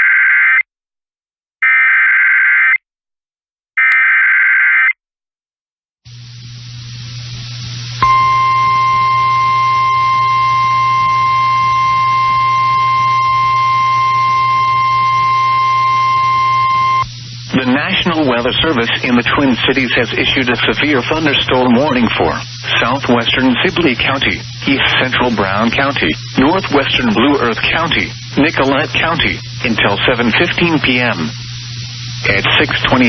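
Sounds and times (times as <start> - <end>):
hiss with low hum: 6.1 - 33.0
single-pitch attention tone: 8.0 - 17.1
warbling digital data tones: 8.0 - 29.4.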